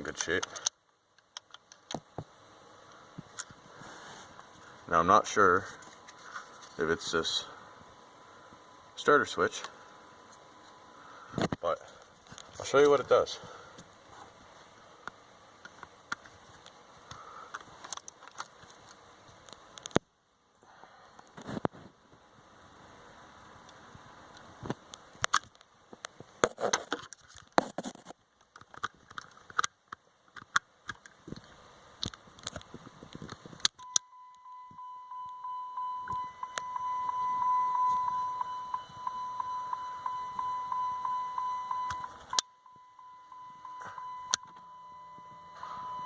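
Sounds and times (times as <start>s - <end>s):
car dashboard warning chime: 33.8s - 46.0s.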